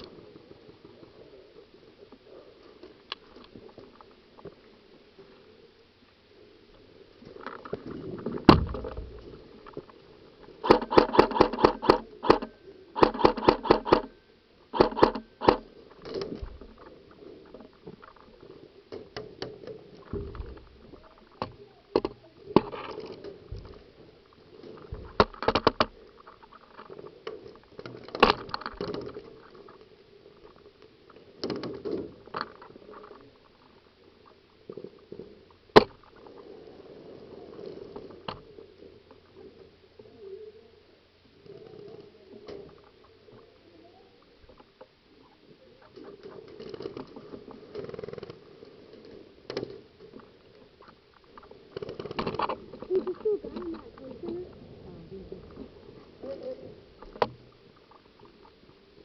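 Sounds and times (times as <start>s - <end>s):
airsoft gun rapid fire: 10.6s - 14.1s, 14.8s - 15.6s.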